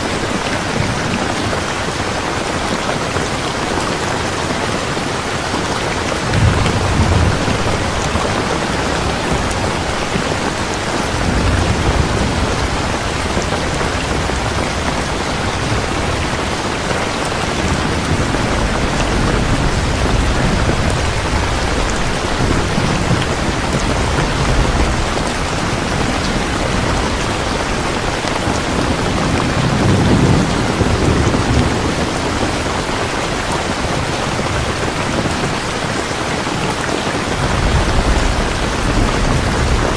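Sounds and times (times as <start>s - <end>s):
thunder rumbling: 0.0s - 36.2s, 37.2s - 39.9s
heavy rain falling: 0.0s - 39.9s.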